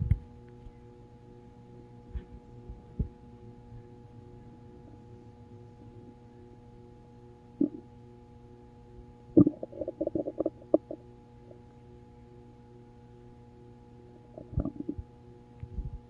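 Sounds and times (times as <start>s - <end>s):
hum of held tones: 0.0s - 16.0s
stomach growling: 7.6s - 7.9s, 9.3s - 11.6s, 14.3s - 15.1s.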